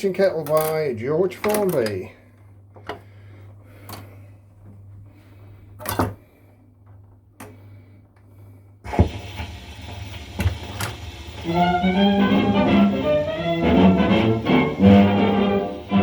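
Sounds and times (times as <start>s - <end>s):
radio speaker hum: 8.9s - 16.0s
music from record: 9.2s - 16.0s
record surface hiss and crackle: 9.8s - 16.0s.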